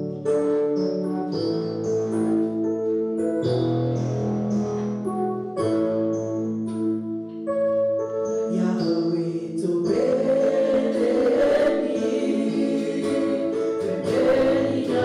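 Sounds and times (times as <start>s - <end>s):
keyboard chords: 0.0s - 15.0s
group of voices singing: 9.8s - 15.0s.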